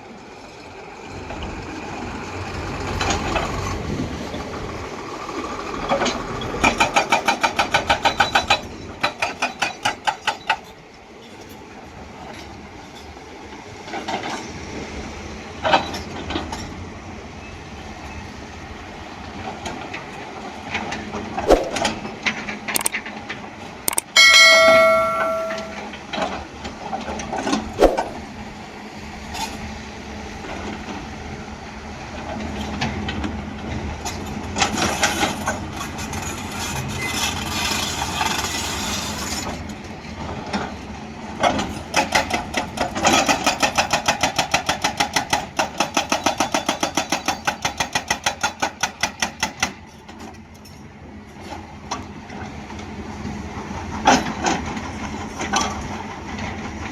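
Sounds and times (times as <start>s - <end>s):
hydraulic hammer blows: 23.9s - 26.0s
sharp ringing metal clang: 24.0s - 25.9s.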